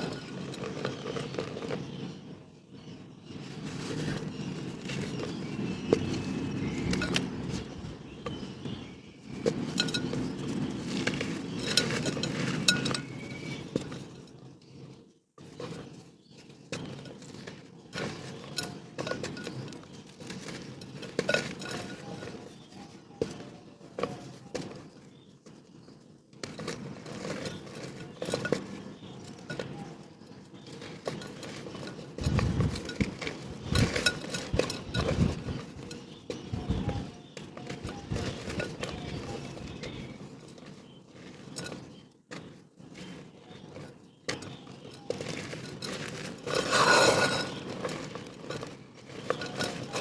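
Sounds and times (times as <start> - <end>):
dried mud crunching: 0.0 - 2.0, 3.6 - 14.2, 26.4 - 50.0
hard pieces clinking: 44.4 - 50.0.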